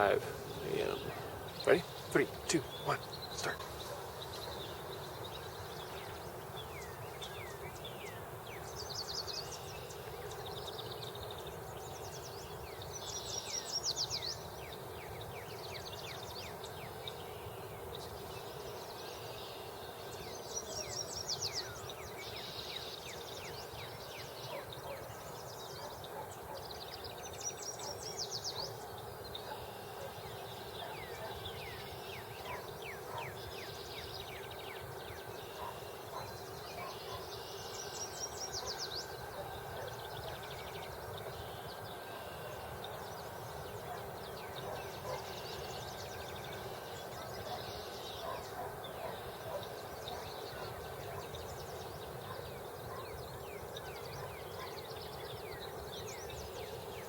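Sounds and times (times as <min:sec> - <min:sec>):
quick high bird song phrase: 0:00.0 - 0:04.1
wild birds singing and calling: 0:00.0 - 0:57.0.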